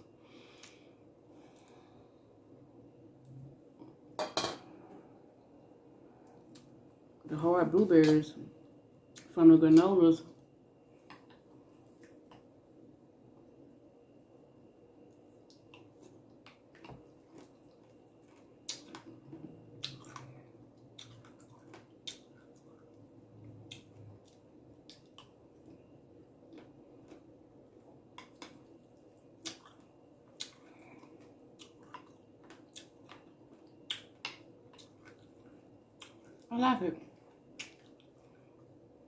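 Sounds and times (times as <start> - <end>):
chewing crunchy food: 15.0 - 38.8.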